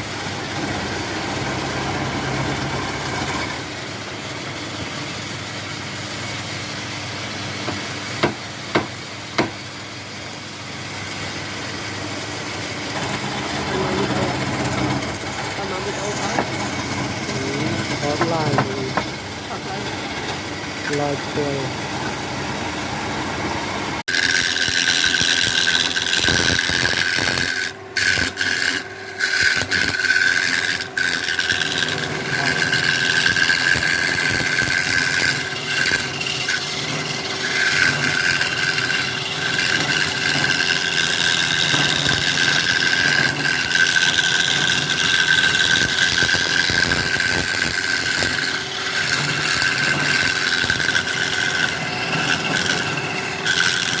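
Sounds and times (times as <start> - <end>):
lathe motor whine: 0.0 - 54.0
tool scraping spinning wood: 0.0 - 54.0.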